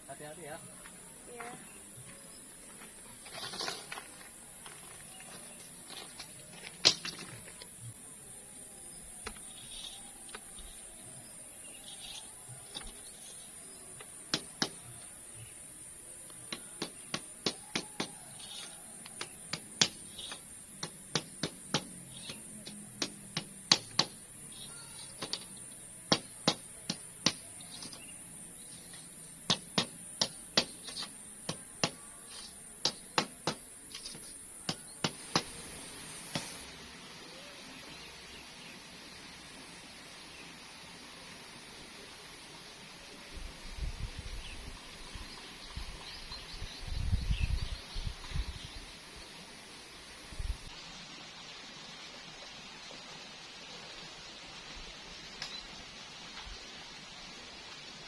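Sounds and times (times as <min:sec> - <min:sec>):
high insect drone: 0:13.0 - 0:36.6
hand tool knocking on bamboo: 0:14.0 - 0:15.0, 0:16.3 - 0:28.1, 0:28.8 - 0:35.6.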